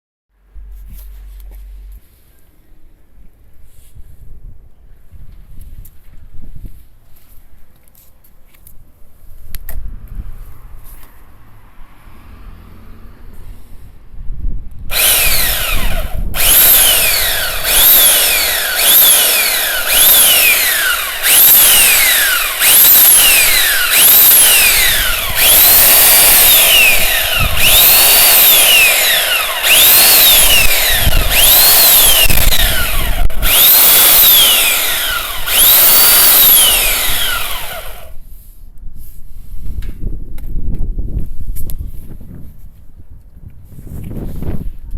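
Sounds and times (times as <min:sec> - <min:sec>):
electric chainsaw motor whine: 0:14.9 - 0:38.2.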